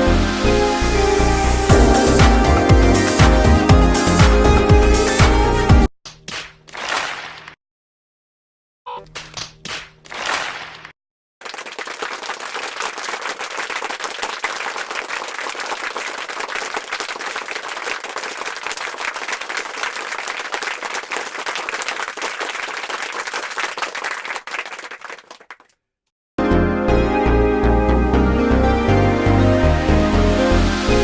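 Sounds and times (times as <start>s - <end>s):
music: 0.0s - 5.9s, 26.4s - 31.0s
crowd applause: 11.4s - 25.7s.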